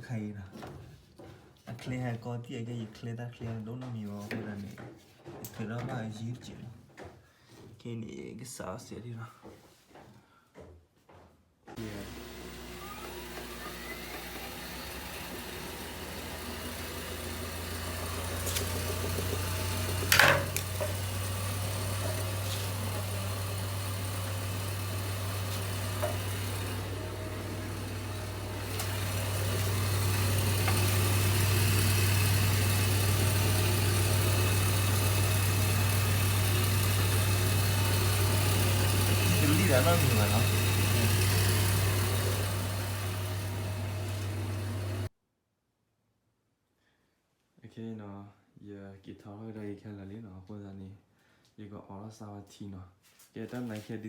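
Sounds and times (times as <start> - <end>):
washing machine humming: 11.8 - 45.1.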